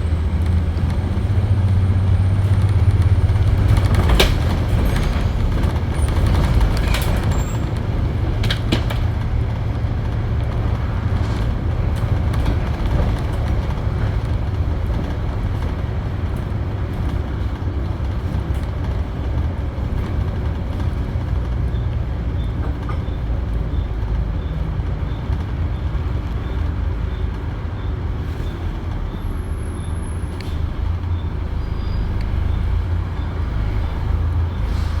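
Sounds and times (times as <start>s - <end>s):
diesel bus engine rumbling: 0.0s - 35.0s.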